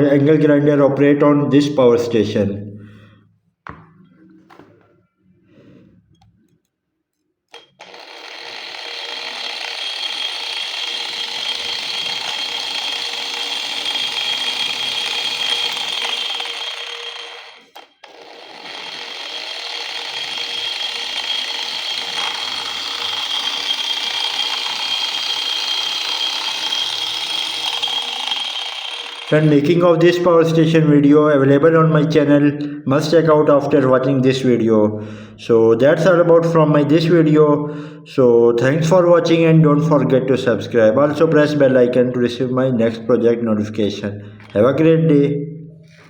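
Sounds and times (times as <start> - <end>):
angle grinder motor whining: 7.5 - 29.8.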